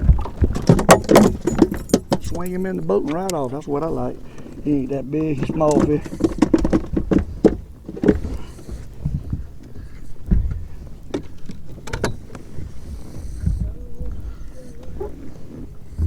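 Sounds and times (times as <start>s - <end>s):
fish flopping on boat deck: 0.0s - 16.0s.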